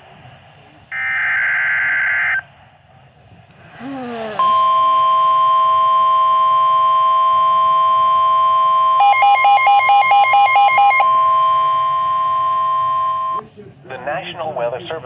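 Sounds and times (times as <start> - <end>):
loud steady warning tone: 0.9 - 2.5, 4.4 - 13.4.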